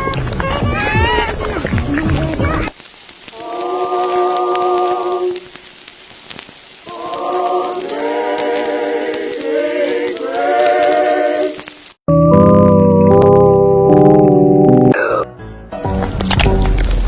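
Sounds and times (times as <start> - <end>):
faint steady hiss: 2.7 - 12.0
person singing with vibrato: 3.3 - 5.5.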